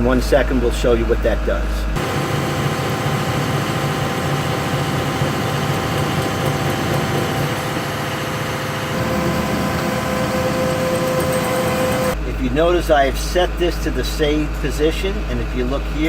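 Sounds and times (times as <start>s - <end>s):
excavator diesel engine running: 1.9s - 12.3s.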